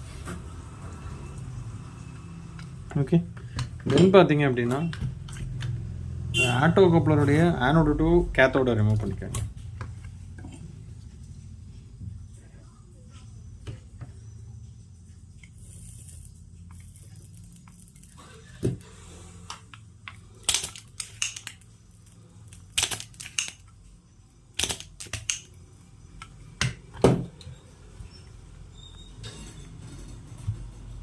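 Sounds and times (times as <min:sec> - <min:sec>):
metallic clicks of hand tools: 0:22.8 - 0:23.8, 0:24.6 - 0:25.5.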